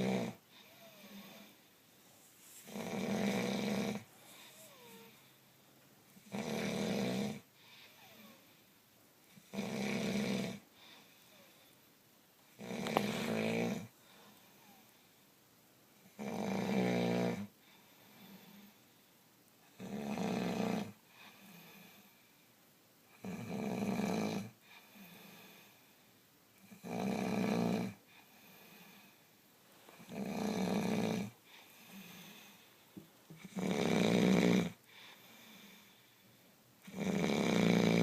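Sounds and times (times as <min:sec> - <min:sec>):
loud snoring: 0:00.0 - 0:01.5, 0:02.7 - 0:04.1, 0:06.3 - 0:07.5, 0:09.5 - 0:10.6, 0:12.6 - 0:13.9, 0:16.1 - 0:17.5, 0:19.8 - 0:21.0, 0:23.2 - 0:24.5, 0:26.7 - 0:28.0, 0:30.0 - 0:32.4, 0:33.4 - 0:34.8, 0:36.8 - 0:38.0
quiet breathing: 0:00.0 - 0:09.5, 0:10.3 - 0:16.2, 0:17.3 - 0:19.8, 0:20.9 - 0:23.2, 0:24.5 - 0:26.7, 0:27.5 - 0:38.0.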